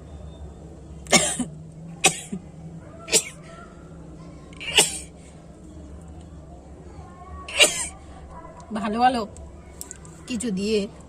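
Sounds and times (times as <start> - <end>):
person sneezing: 4.6 - 5.1, 7.5 - 7.9.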